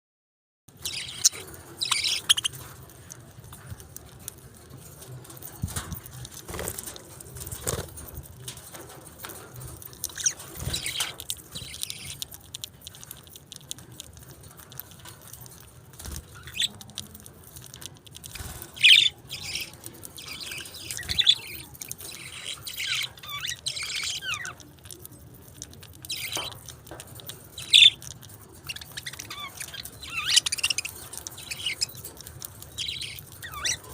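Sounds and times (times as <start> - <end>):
budgerigars chirping: 0.8 - 2.7, 10.1 - 12.2, 16.4 - 16.8, 18.4 - 24.6, 26.0 - 26.6, 27.6 - 28.0, 28.6 - 33.9.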